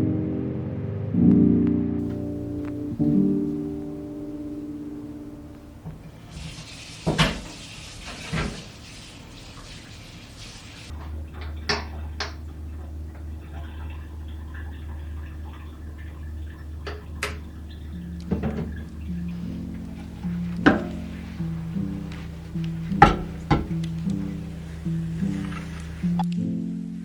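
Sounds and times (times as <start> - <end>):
low steady hum: 2.0 - 6.3, 10.9 - 27.0
water running from a tap: 5.8 - 26.1
dishes knocking in a sink: 18.3 - 18.8, 20.6 - 21.3, 22.9 - 23.9
dishes clinking: 20.6 - 21.4, 22.9 - 23.9.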